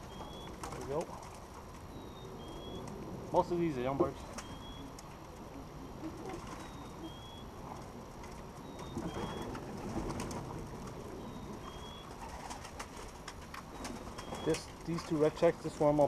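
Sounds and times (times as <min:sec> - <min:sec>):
pigeons cooing: 0:00.0 - 0:16.0.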